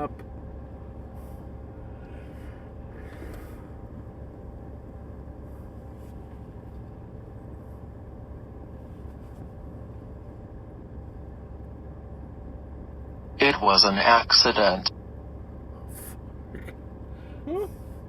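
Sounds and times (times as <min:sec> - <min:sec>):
vehicle engine idling: 0:00.0 - 0:18.0
faint even hum: 0:13.4 - 0:14.9.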